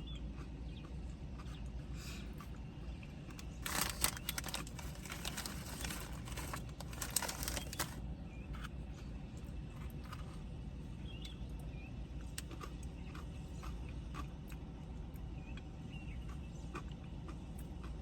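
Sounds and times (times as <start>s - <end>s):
chewing clicks and smacks: 0.0s - 1.8s, 11.2s - 18.0s.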